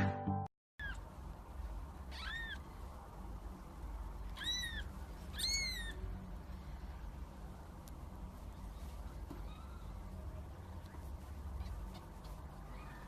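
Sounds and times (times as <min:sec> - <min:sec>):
cat meowing: 0:02.1 - 0:02.6, 0:04.3 - 0:06.0.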